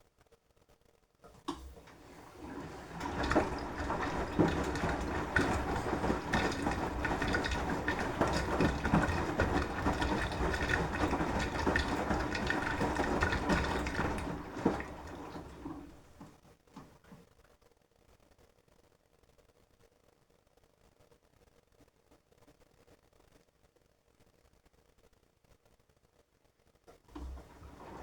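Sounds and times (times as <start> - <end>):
washing machine drum turning: 1.3 - 17.2, 27.1 - 28.0
water sloshing: 1.4 - 17.2, 27.1 - 28.0
clothes knocking in drum: 1.5 - 16.9, 27.1 - 28.0.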